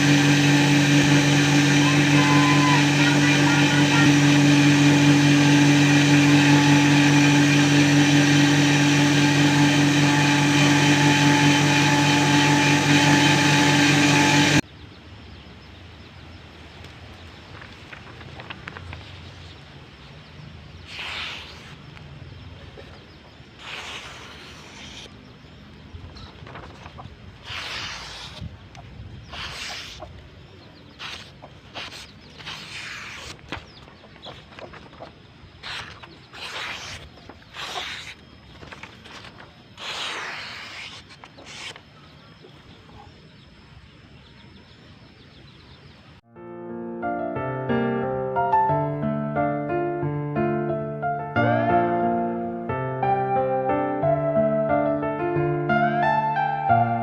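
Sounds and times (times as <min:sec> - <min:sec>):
power tool motor humming: 0:00.0 - 0:14.6, 0:23.6 - 0:25.1, 0:27.5 - 0:28.5, 0:29.3 - 0:30.1, 0:31.0 - 0:34.8, 0:35.6 - 0:41.8
file rasping on metal: 0:23.6 - 0:25.1, 0:27.5 - 0:28.4, 0:29.3 - 0:30.1, 0:35.6 - 0:38.2.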